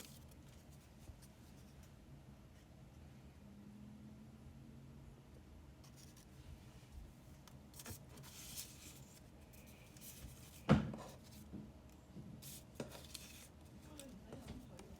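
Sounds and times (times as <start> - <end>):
paper rustling and scraping: 0.0 - 1.8, 7.7 - 11.4, 12.4 - 14.9.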